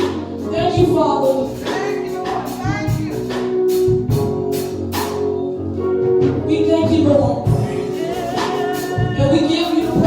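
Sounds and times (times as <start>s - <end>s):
singing over held chords: 0.0s - 3.9s, 6.8s - 10.0s
steady percussion beat: 0.0s - 5.4s, 7.3s - 10.0s.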